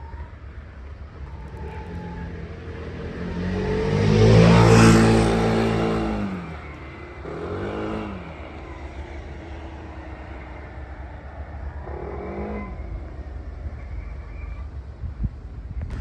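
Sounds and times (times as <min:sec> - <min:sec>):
loud vehicle engine: 0:00.0 - 0:16.0
engine revving: 0:01.2 - 0:14.5
steady low rumble: 0:08.1 - 0:16.0.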